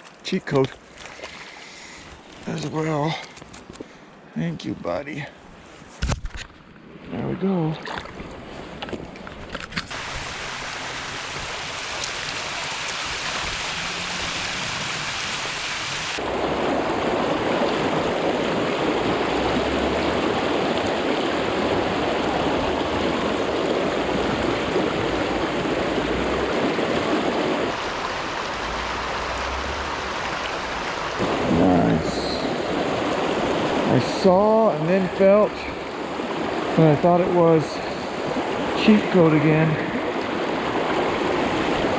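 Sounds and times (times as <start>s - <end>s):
river water rushing: 9.9s - 31.6s.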